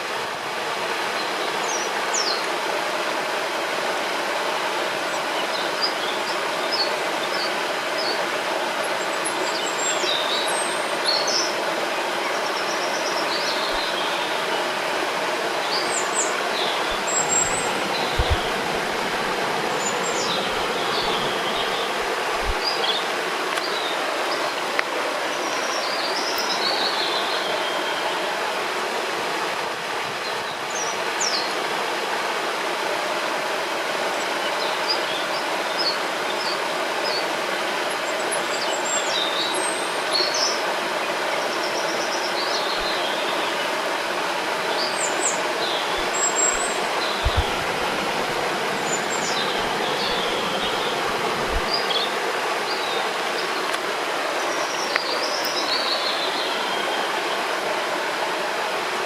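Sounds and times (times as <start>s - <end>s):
river rushing: 0.0s - 59.0s
songbirds chirping: 4.0s - 28.4s, 33.8s - 59.0s
low thumps: 17.0s - 19.6s, 47.2s - 48.5s.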